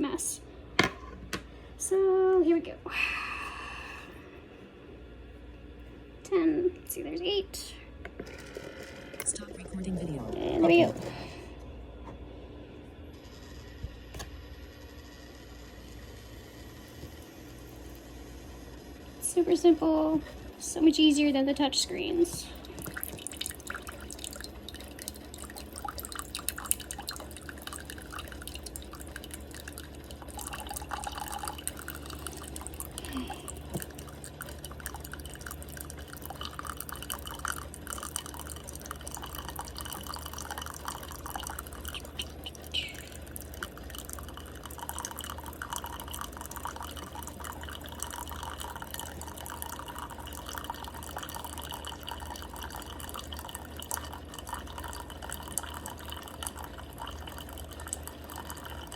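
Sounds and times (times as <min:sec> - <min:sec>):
coffee maker humming: 0:00.0 - 0:58.9
coffee dripping into cup: 0:21.0 - 0:58.9.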